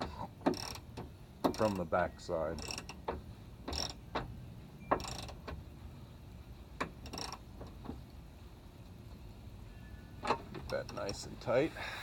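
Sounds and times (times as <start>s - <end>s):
ratchet wrench clicking: 0.5s - 0.9s, 2.6s - 3.0s, 5.0s - 5.4s, 7.0s - 7.4s.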